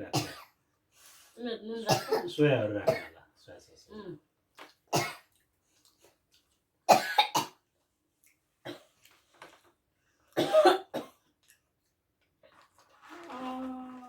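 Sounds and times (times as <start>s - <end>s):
person coughing: 0.2s - 0.5s, 1.9s - 2.3s, 6.9s - 7.5s, 10.4s - 11.1s.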